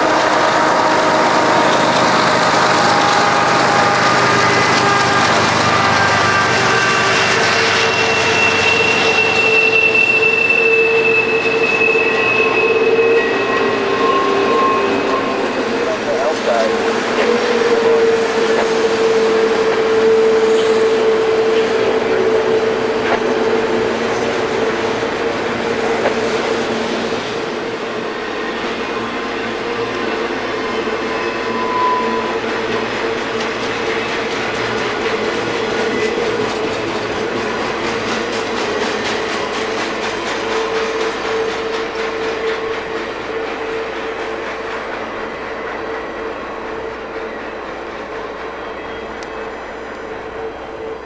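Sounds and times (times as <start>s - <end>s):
high steel wheel squeals: 0.0s - 51.0s
train rumbling past: 0.0s - 51.0s
sustained high tone: 0.8s - 25.4s.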